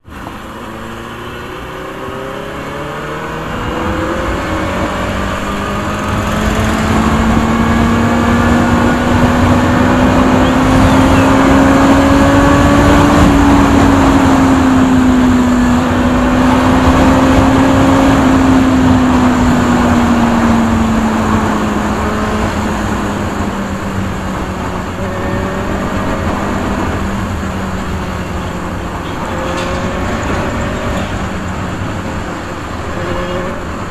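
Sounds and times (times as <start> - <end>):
other engines rising in pitch: 0.0 - 33.9
motorcycle engine passing by: 1.3 - 15.3.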